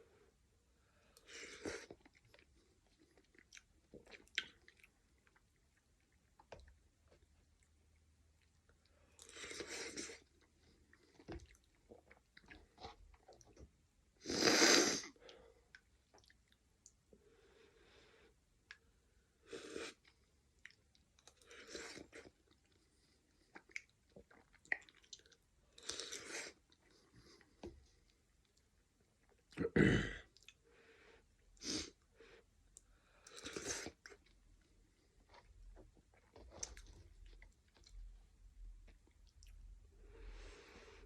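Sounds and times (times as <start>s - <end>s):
person chewing and mouth noises: 23.4s - 27.5s.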